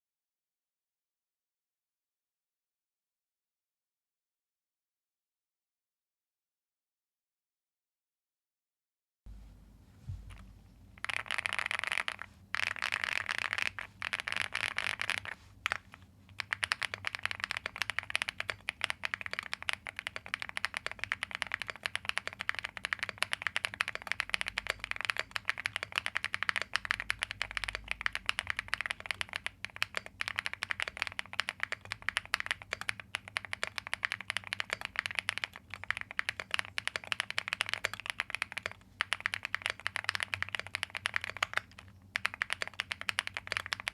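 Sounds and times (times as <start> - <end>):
fast typing on mechanical keyboard: 11.0 - 43.9.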